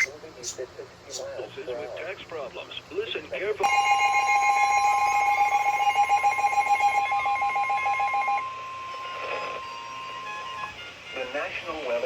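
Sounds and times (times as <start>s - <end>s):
steady high alert tone: 3.6s - 11.2s.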